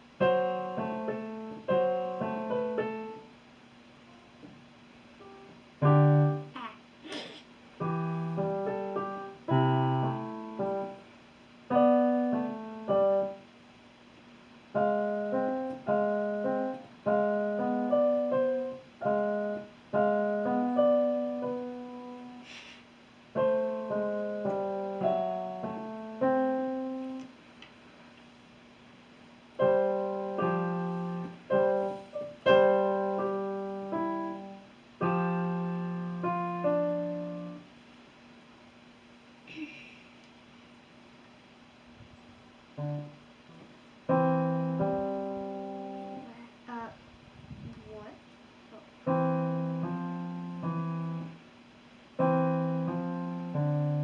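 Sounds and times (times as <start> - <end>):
piano playing a carol: 0.0 - 3.3, 5.2 - 6.6, 7.8 - 11.0, 11.7 - 13.4, 14.7 - 22.5, 23.3 - 27.3, 29.6 - 37.7, 42.8 - 43.2, 44.0 - 46.4, 49.0 - 51.4, 52.2 - 54.0.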